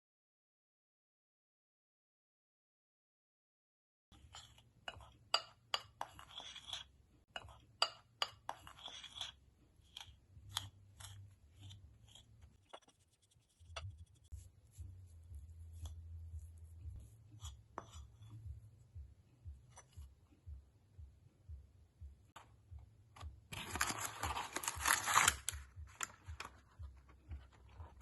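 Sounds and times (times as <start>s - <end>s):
utensil scraping bowl: 4.2s - 13.9s
utensil tapping and clinking in bowl: 4.4s - 6.2s, 7.3s - 8.7s.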